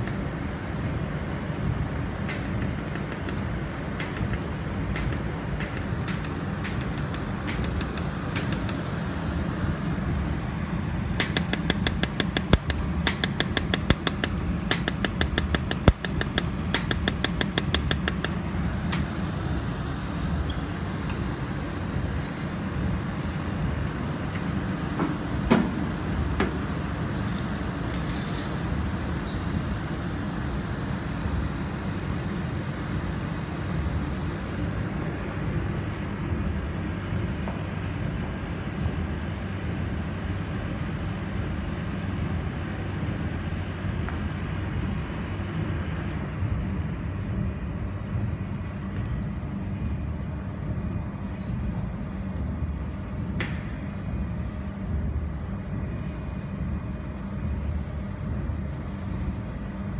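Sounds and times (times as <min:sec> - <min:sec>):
laser welder ticking: 0:02.2 - 0:09.0, 0:11.1 - 0:19.4.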